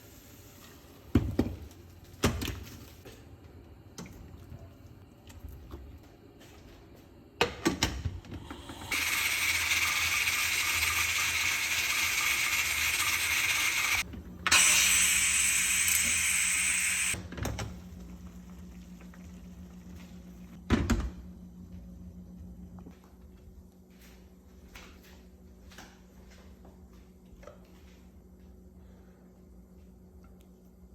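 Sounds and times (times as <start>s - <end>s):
water running: 8.7s - 14.0s.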